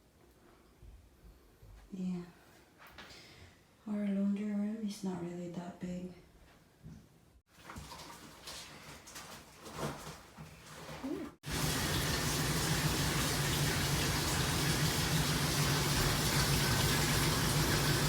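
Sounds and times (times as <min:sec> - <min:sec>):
washing machine water rushing: 0:07.5 - 0:18.0.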